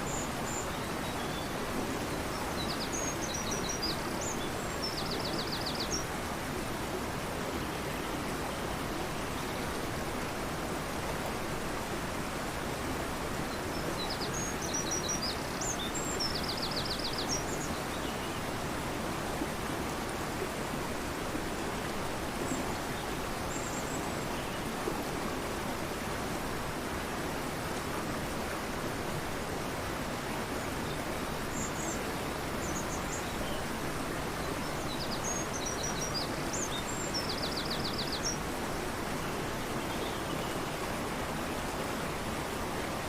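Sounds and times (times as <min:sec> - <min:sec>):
river rushing: 0:00.0 - 0:43.0
small birds chirping: 0:30.9 - 0:38.5.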